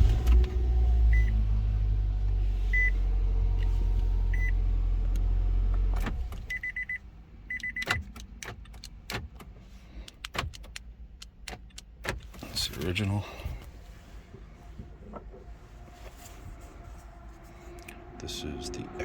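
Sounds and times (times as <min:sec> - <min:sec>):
car engine idling: 0:00.0 - 0:19.0.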